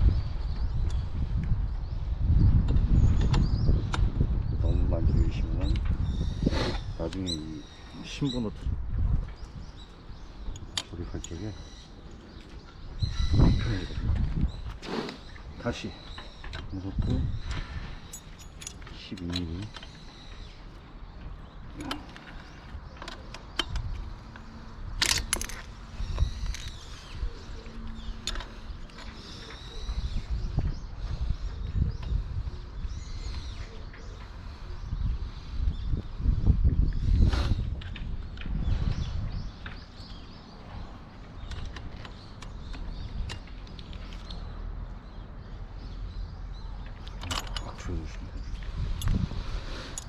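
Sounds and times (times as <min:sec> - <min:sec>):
spanner clinking on metal nuts: 0:18.0 - 0:19.9, 0:46.9 - 0:48.2.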